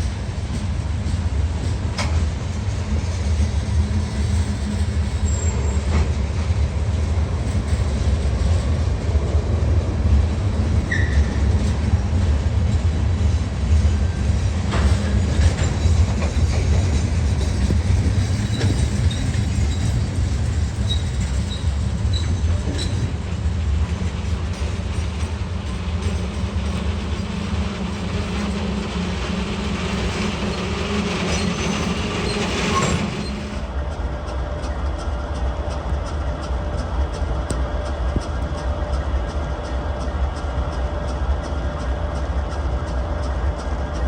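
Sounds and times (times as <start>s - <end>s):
diesel locomotive rumble: 0.0s - 44.0s
short high squeaks: 10.9s - 11.4s, 30.4s - 33.6s.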